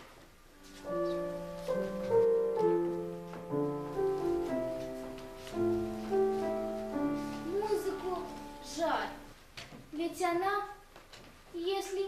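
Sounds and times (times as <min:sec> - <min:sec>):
slow piano music: 0:00.0 - 0:09.4.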